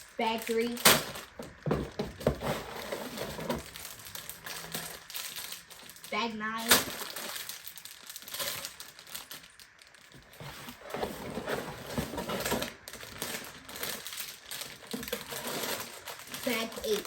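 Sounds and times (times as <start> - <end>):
plastic bags crinkling: 0.0 - 17.0
plastic bricks rattling: 10.2 - 17.0.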